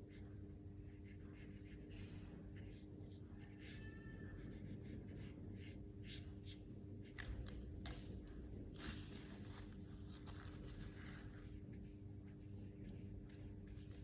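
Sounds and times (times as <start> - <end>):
faint rustling and scraping: 7.2 - 14.0.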